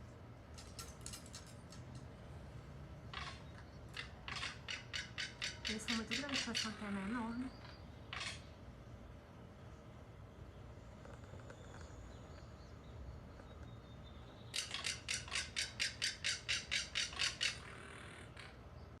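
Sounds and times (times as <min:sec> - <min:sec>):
hawk calling: 0:03.1 - 0:08.5, 0:14.6 - 0:18.6.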